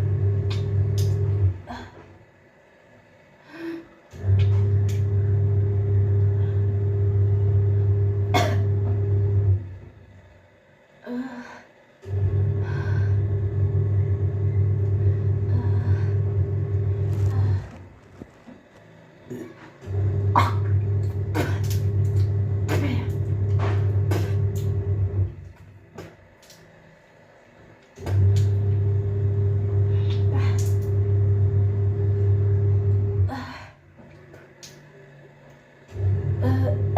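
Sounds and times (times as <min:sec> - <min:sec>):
loud low hum: 0:00.0 - 0:02.0, 0:03.4 - 0:10.3, 0:12.0 - 0:33.8, 0:34.6 - 0:36.9
person coughing: 0:08.3 - 0:08.8, 0:20.3 - 0:20.8.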